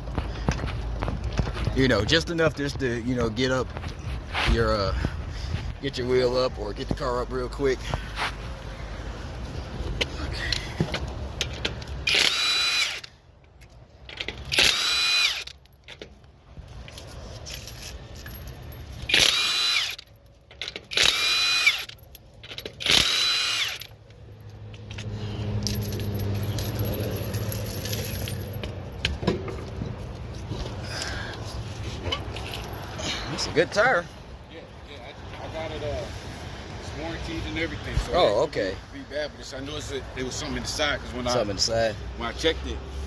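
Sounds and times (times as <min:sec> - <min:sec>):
impact wrench whirring: 0:12.0 - 0:13.2, 0:14.4 - 0:15.6, 0:19.1 - 0:20.1, 0:20.8 - 0:22.0, 0:22.7 - 0:24.0.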